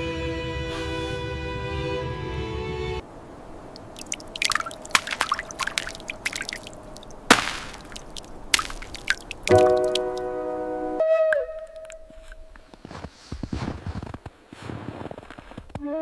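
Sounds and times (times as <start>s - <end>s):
music: 0.0s - 3.0s, 9.6s - 11.3s
wet clicks and drips: 3.7s - 10.4s, 11.3s - 12.4s
sharp cracks: 3.8s - 10.4s.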